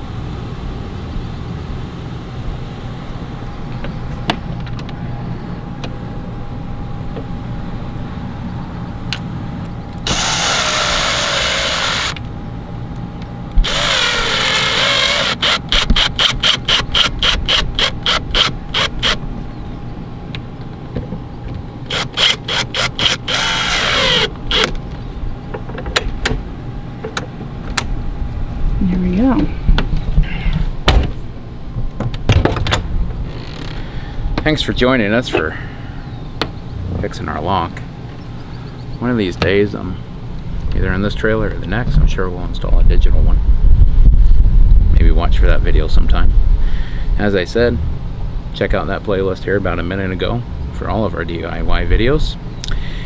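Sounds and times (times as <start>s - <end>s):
steady hum: 0.0s - 53.0s
power drill driving screws: 10.0s - 12.2s, 13.6s - 19.2s, 21.9s - 24.7s.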